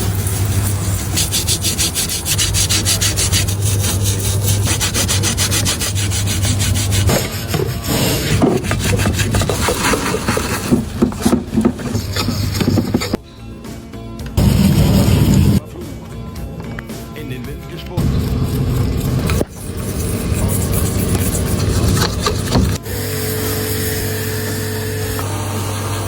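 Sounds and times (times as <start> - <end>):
scrubbing metal parts by hand: 0.0 - 13.2, 18.0 - 22.8.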